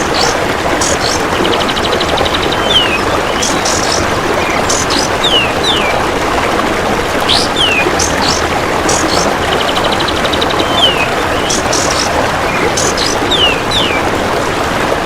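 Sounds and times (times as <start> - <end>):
running water rushing: 0.0 - 15.0
bird whistling downward notes: 7.3 - 14.0.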